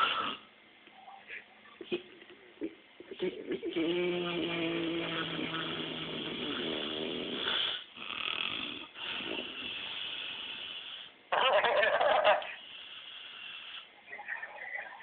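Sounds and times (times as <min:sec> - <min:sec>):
man snoring: 0:03.7 - 0:11.1.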